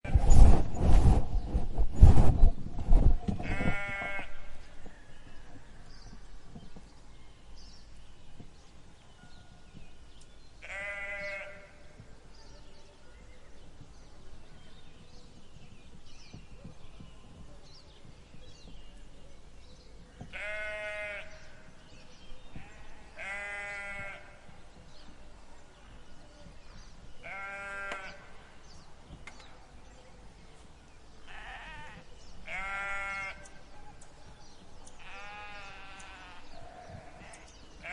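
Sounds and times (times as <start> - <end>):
sheep bleating: 10.6 - 11.7, 20.4 - 21.4, 22.6 - 24.4, 27.2 - 28.2, 31.3 - 33.4.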